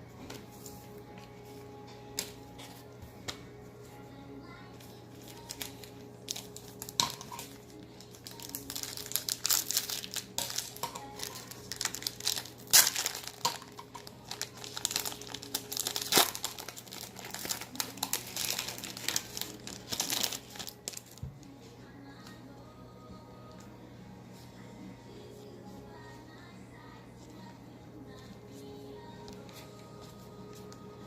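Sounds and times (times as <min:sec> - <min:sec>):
wrapper crinkling: 0:05.0 - 0:21.2.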